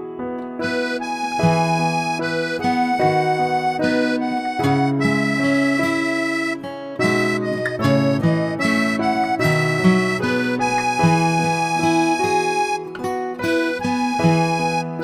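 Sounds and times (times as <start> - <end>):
instrumental music with reedy notes: 0.0 - 15.0.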